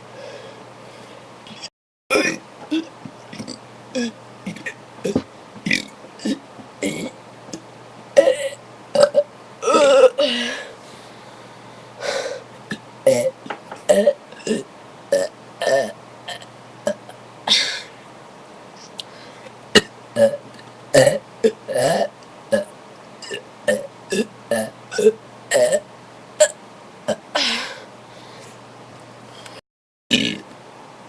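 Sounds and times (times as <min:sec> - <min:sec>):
person burping: 0:02.1 - 0:07.2, 0:08.2 - 0:10.6, 0:12.7 - 0:17.8, 0:19.8 - 0:20.4, 0:21.0 - 0:25.8, 0:30.1 - 0:30.5.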